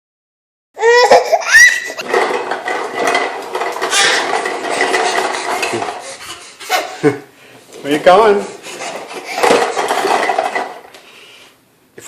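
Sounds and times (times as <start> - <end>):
young child squealing: 0.8 - 2.0
toy lawnmower plastic rattling: 1.5 - 6.9, 7.7 - 11.0.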